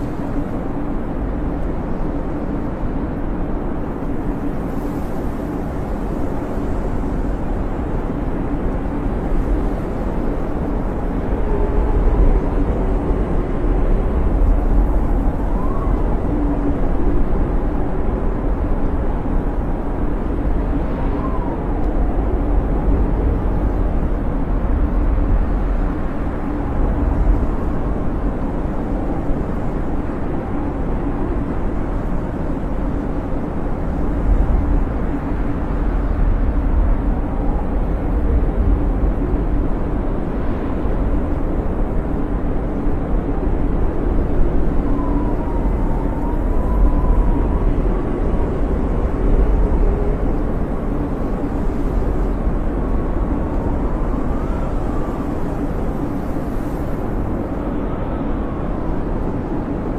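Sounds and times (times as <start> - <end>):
wind blowing with deep rumble: 0.0 - 59.9
faint whistling howl: 10.6 - 18.0, 20.6 - 23.3, 43.3 - 52.5, 53.1 - 59.5.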